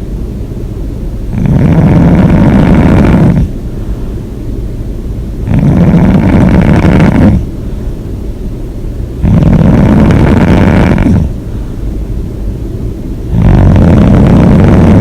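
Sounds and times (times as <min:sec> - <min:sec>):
person snoring loudly: 0:01.3 - 0:03.6, 0:05.4 - 0:07.5, 0:09.2 - 0:11.4, 0:13.3 - 0:15.0
low breathing: 0:01.4 - 0:04.4, 0:05.5 - 0:08.2, 0:09.2 - 0:12.2.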